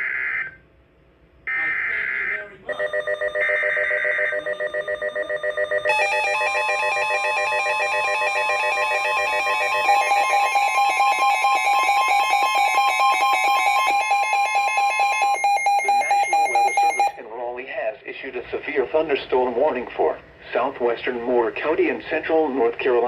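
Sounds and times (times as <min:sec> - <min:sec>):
steady high alarm tone: 0:01.5 - 0:17.2
pulsing electronic alert beeps: 0:02.7 - 0:17.2.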